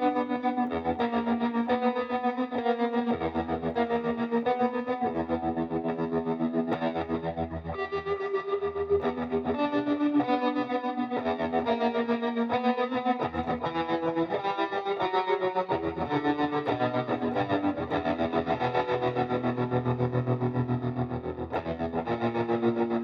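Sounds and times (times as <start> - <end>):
distorted electric guitar: 0.0 - 23.0.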